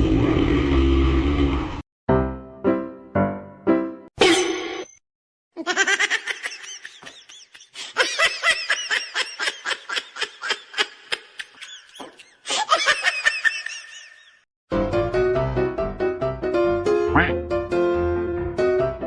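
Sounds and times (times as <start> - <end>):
high-pitched laughter: 5.6 - 14.4.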